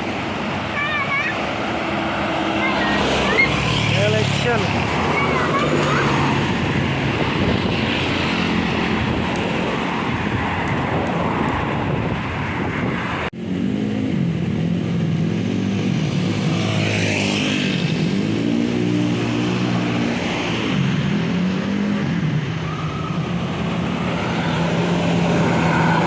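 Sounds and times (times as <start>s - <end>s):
buses driving past: 0.0s - 26.0s.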